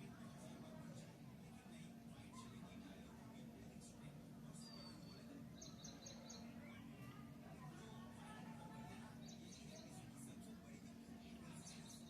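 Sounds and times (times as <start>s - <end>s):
steady low hum: 0.0s - 12.0s
faint bird chirps: 4.5s - 7.2s, 9.1s - 10.1s.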